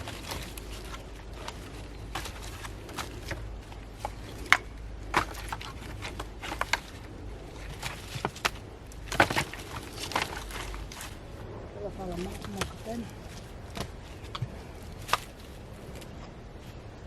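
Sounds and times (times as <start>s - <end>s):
firewood knocks and crackles: 0.0s - 11.4s, 12.0s - 16.4s
low steady rumble: 0.0s - 17.0s.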